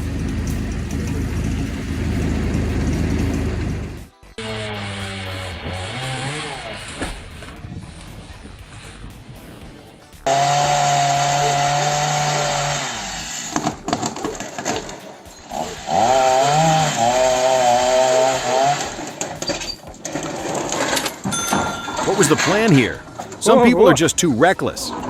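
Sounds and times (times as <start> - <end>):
chainsaw running at high revs: 0.0 - 7.6, 10.2 - 21.0.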